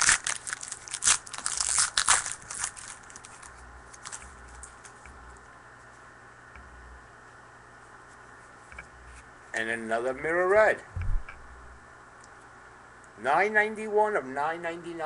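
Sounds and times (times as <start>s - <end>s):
wrapper crinkling and tearing: 0.0s - 5.0s.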